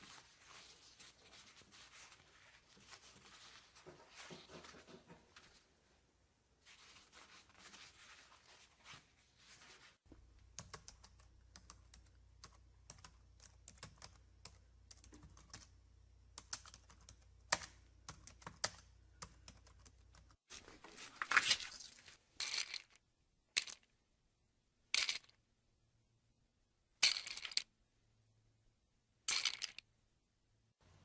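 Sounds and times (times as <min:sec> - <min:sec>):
rustling or scraping strokes: 0:00.0 - 0:05.7, 0:06.6 - 0:10.1
typing on computer keyboard: 0:10.6 - 0:15.7, 0:16.4 - 0:20.4.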